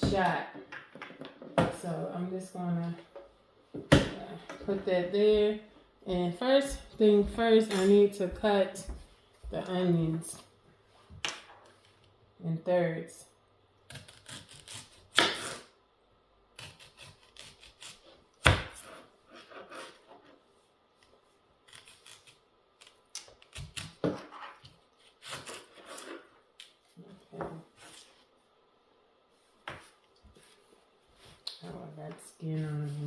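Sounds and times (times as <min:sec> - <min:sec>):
knife cutting onions: 0:16.6 - 0:20.0.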